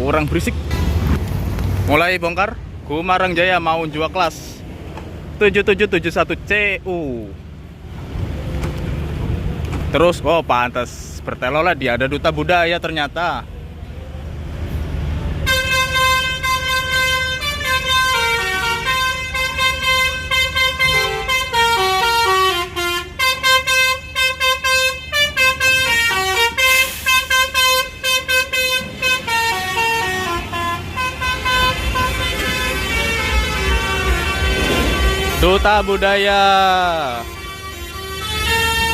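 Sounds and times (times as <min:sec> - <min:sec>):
bus engines rumbling: 0:00.0 - 0:38.9
tuned trumpet bus horns: 0:15.4 - 0:38.9.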